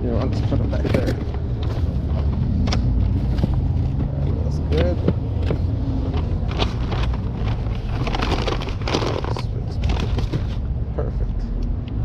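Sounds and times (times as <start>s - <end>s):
bag rustling and clicking: 4.7s - 10.6s.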